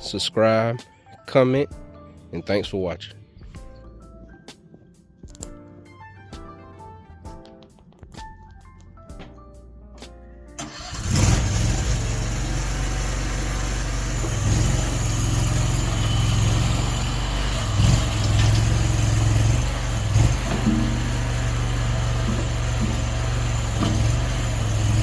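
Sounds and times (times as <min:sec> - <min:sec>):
skid steer engine running: 0:10.6 - 0:25.0
plucked-string music: 0:15.0 - 0:25.0.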